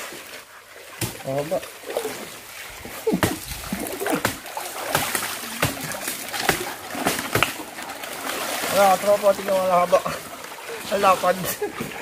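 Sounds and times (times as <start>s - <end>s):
water splashing and sloshing: 0.0s - 12.0s.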